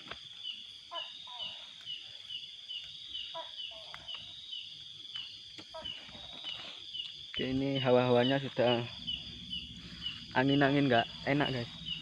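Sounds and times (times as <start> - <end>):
night insects chirping: 0.0 - 12.0.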